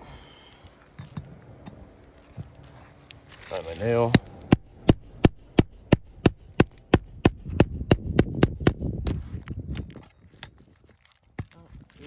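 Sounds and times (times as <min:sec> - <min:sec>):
high metallic ring: 0:04.1 - 0:09.3
hammer tapping nail puller: 0:04.2 - 0:09.2.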